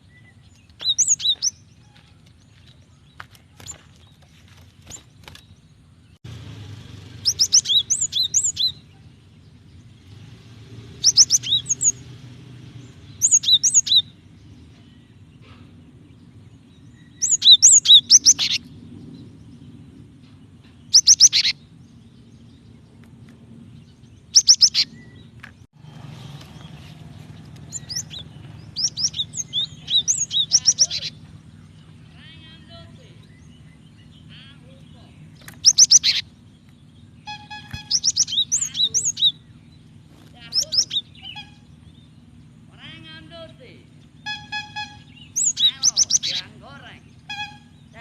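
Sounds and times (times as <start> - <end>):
bird chirping: 0.0 - 48.0.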